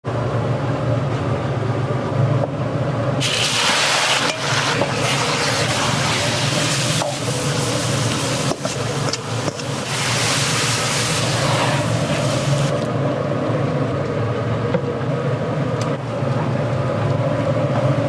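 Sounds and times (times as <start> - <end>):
constant low hum: 0.0 - 18.0
hiss: 3.2 - 12.9.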